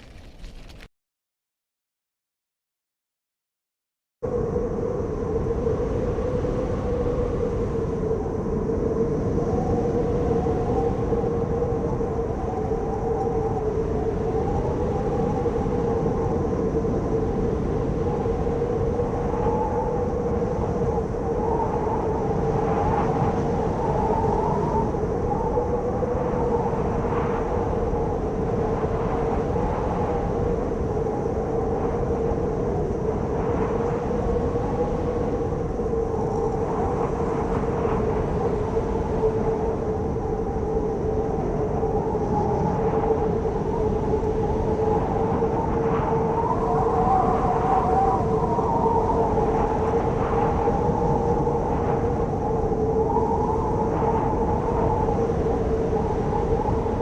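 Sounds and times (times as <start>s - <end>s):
strong wind howling: 0.0s - 0.9s, 4.2s - 57.0s.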